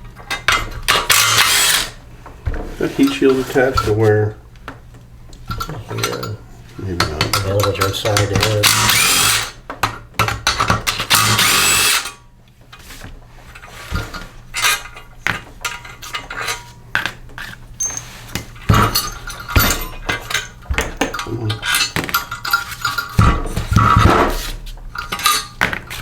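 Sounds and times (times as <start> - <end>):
power drill whirring: 1.1 - 2.0, 8.6 - 9.6, 11.0 - 12.2.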